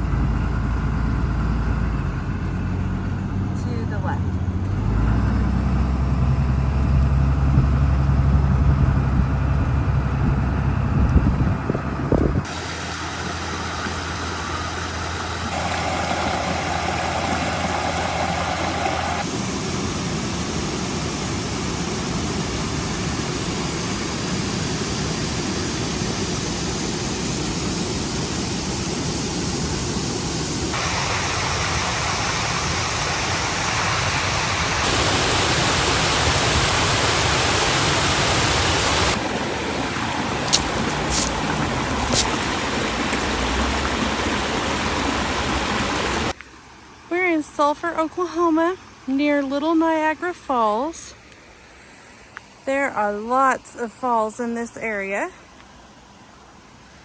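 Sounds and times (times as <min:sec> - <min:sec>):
truck engine and road noise: 0:00.0 - 0:57.0
steady rushing noise: 0:12.2 - 0:46.4
waterfall rushing: 0:12.4 - 0:46.4.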